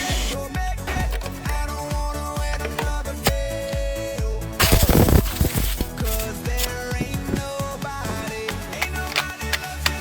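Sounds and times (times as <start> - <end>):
electronic pop music: 0.0 - 10.0.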